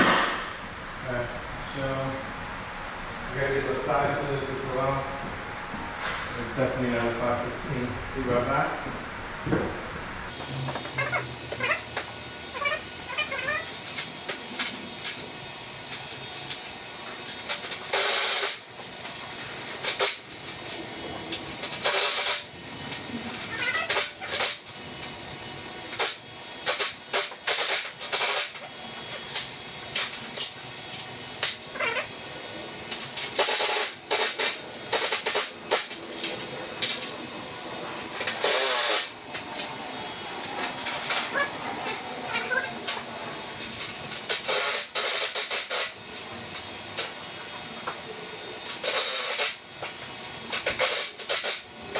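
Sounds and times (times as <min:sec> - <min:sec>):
bursts of hissing noise: 0:10.3 - 0:19.1, 0:19.7 - 0:24.7, 0:25.9 - 0:47.4, 0:48.0 - 0:51.9
cat meowing: 0:23.5 - 0:24.0, 0:31.7 - 0:32.1, 0:41.3 - 0:41.6, 0:42.3 - 0:42.8.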